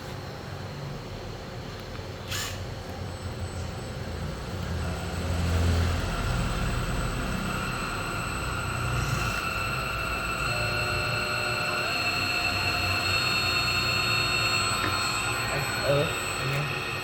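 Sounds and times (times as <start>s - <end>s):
short hiss: 2.3s - 2.6s
high electrical whine: 2.4s - 17.0s
electric motor humming: 5.5s - 17.0s.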